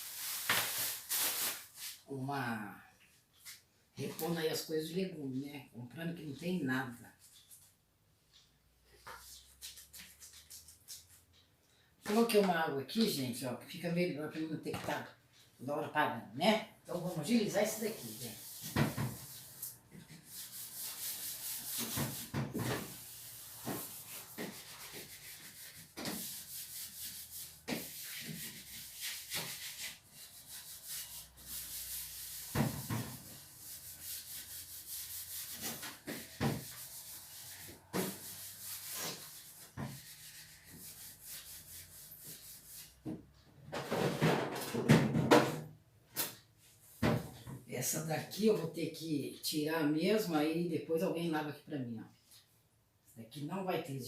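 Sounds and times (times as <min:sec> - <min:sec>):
sponge scrubbing refrigerator: 0:17.0 - 0:43.0.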